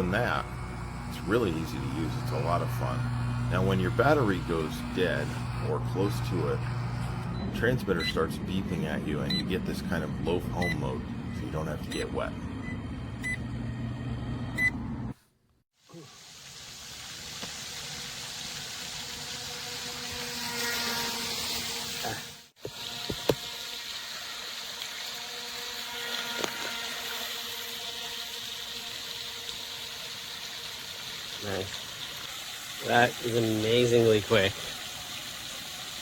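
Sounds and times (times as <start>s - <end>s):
faint electric motor hum: 0.0s - 15.2s, 16.0s - 36.0s
hiss of water and air: 16.0s - 19.4s.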